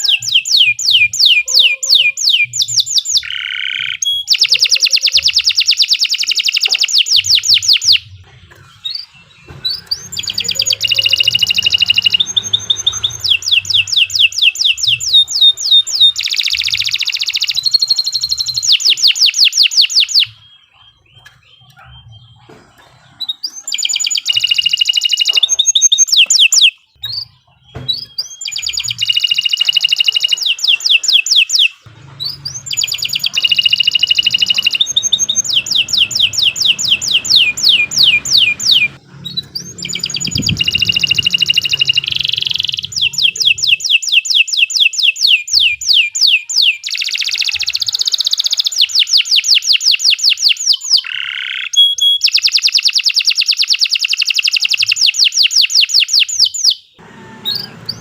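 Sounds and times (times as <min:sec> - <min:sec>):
canary singing trills: 0:00.0 - 0:58.0.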